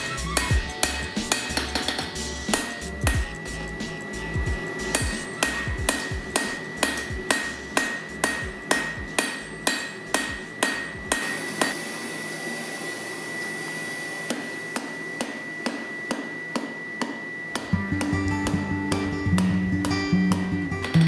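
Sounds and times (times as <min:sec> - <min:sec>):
hammer striking metal on anvil: 0:00.0 - 0:03.4, 0:04.8 - 0:11.8, 0:14.3 - 0:21.0
steady high whine: 0:00.0 - 0:21.0.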